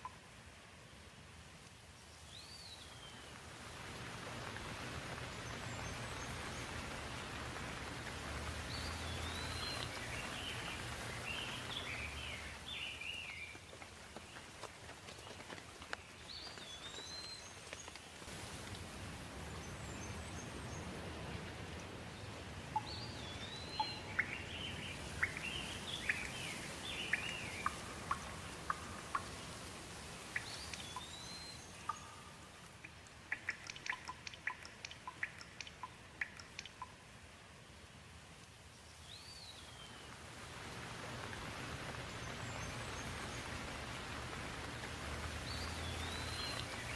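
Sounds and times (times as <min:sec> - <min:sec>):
water dripping close by: 0:00.0 - 0:00.3, 0:01.6 - 0:46.9
steady rain: 0:00.0 - 0:46.9
birds singing whistled phrases: 0:22.8 - 0:29.3, 0:30.4 - 0:32.3, 0:45.4 - 0:46.9.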